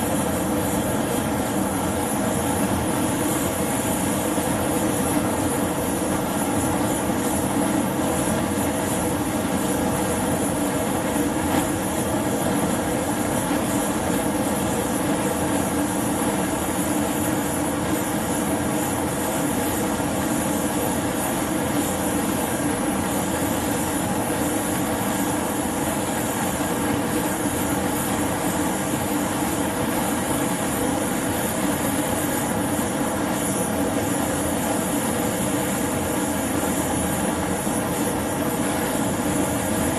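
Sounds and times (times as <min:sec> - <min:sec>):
gas torch roaring: 0:00.0 - 0:39.9.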